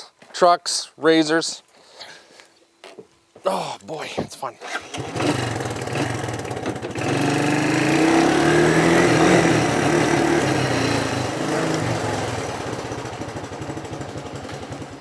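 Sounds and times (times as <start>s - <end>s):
small engine revving: 4.6s - 15.0s.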